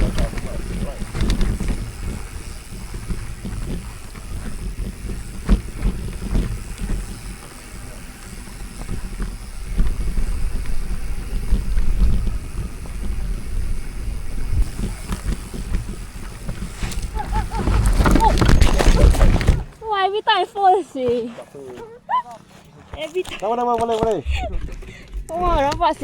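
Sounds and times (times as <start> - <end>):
wind rumbling on microphone: 0.0 - 19.8
bike knocking over rough ground: 0.0 - 21.9.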